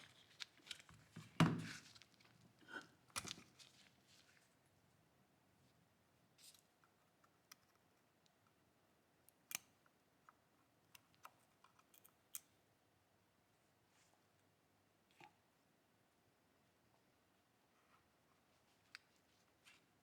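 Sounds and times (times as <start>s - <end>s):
small parts clicking and tapping: 9.2s - 12.6s.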